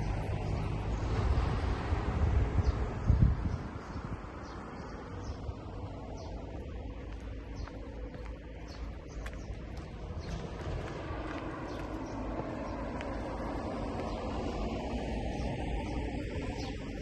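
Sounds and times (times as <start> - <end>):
low rumble: 0.0 - 17.0
bird chirping: 2.6 - 10.6, 14.0 - 17.0.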